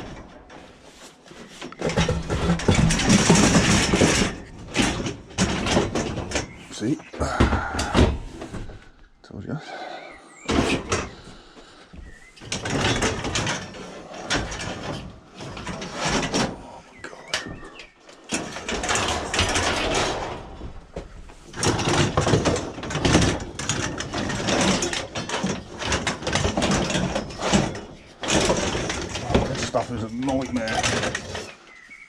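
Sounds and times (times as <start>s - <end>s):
metal clanging knocks: 0.0s - 8.9s.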